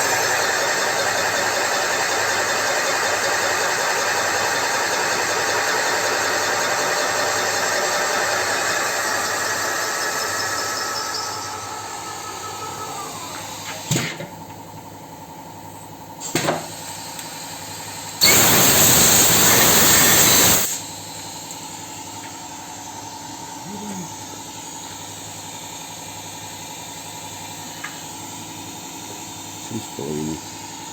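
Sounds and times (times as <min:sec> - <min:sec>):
metal-cutting machine running: 0:00.0 - 0:14.0, 0:18.2 - 0:20.8
compressed air blast: 0:18.2 - 0:20.8.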